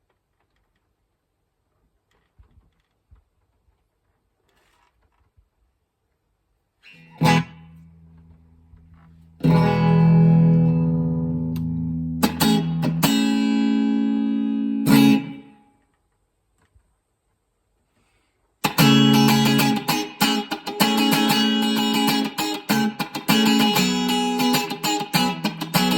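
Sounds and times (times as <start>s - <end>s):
electric guitar strumming chords: 7.0s - 8.7s, 9.4s - 15.6s, 18.6s - 25.9s.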